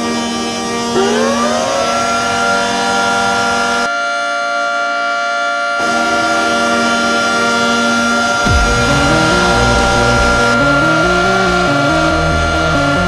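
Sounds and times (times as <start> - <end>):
goal horn blowing: 5.8 - 13.0.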